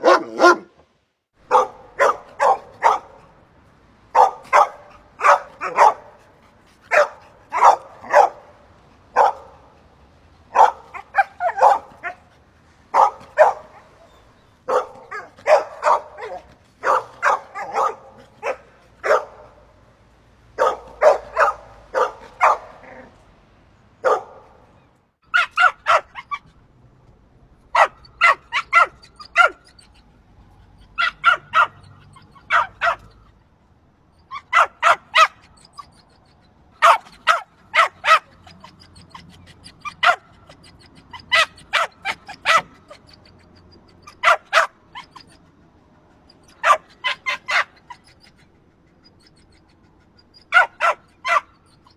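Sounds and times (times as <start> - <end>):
dog barking: 0.0 - 0.7, 1.4 - 3.3, 4.1 - 9.7, 10.5 - 12.3, 12.9 - 19.8, 20.6 - 23.1, 24.0 - 24.7, 25.3 - 26.5, 27.7 - 29.9, 30.9 - 33.2, 34.3 - 36.0, 36.8 - 43.2, 44.0 - 45.4, 46.4 - 48.2, 50.3 - 51.9.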